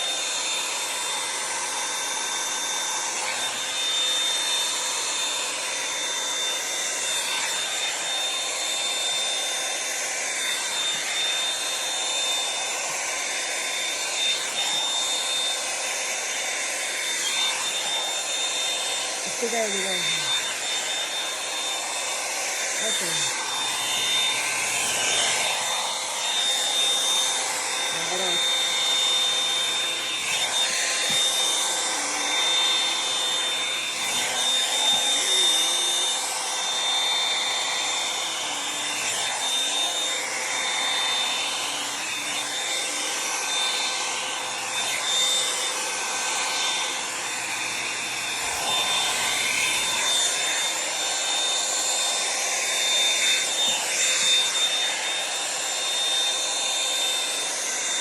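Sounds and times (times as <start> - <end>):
hair dryer blowing air: 0.0 - 58.0.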